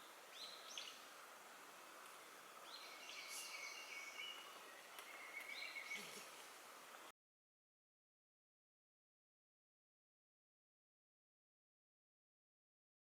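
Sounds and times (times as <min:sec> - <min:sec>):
birds calling faintly: 0:00.0 - 0:07.1
steady outdoor hiss: 0:00.0 - 0:07.1.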